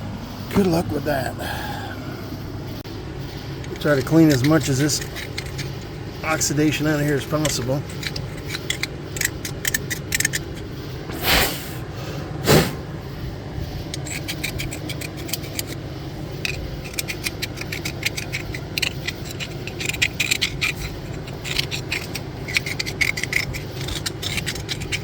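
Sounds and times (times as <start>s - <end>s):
metal scraping and rasping: 3.2s - 11.7s, 13.6s - 25.0s.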